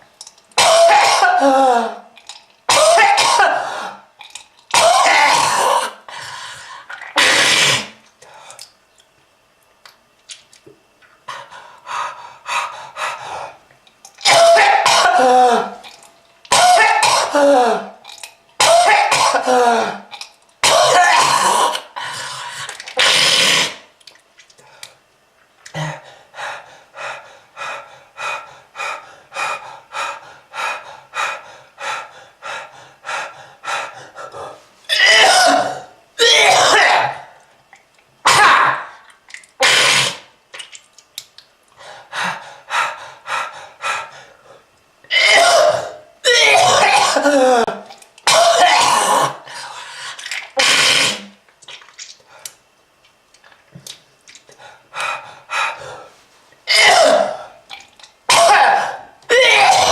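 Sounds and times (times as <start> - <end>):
person coughing hard: 0.6 - 2.0, 2.7 - 3.9, 4.7 - 6.0, 7.2 - 7.9, 14.2 - 15.8, 16.5 - 18.0, 18.6 - 21.8, 34.9 - 37.3, 38.3 - 38.9, 45.1 - 49.4, 56.7 - 57.5, 58.3 - 59.9.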